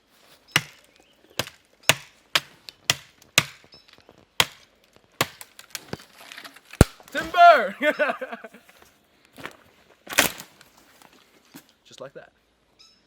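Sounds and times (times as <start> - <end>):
knife chopping into wood: 0.6 - 0.8, 1.4 - 3.7, 4.4 - 4.6, 5.2 - 5.6.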